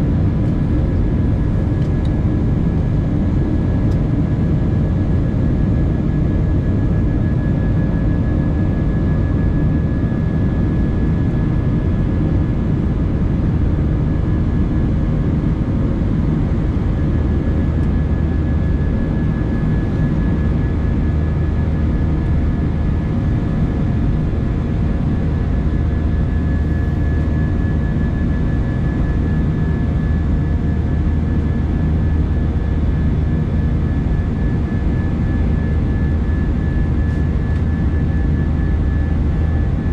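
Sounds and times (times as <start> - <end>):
jet engine and airflow rumble: 0.0 - 39.9.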